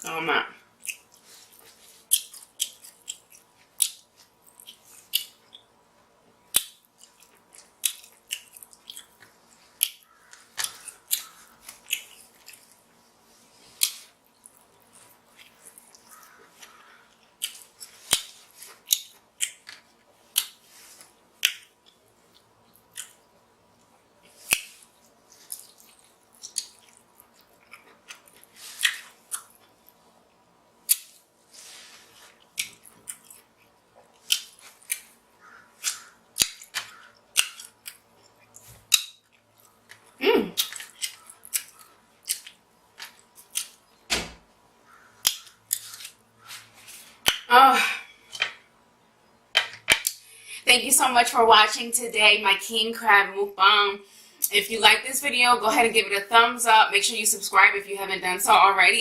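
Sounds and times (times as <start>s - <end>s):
eating clicks and wet smacks: 0.8s - 1.2s, 2.1s - 5.7s, 6.5s - 12.8s, 13.8s - 20.6s, 21.4s - 23.2s, 23.8s - 30.0s, 32.4s - 44.0s, 44.9s - 46.2s.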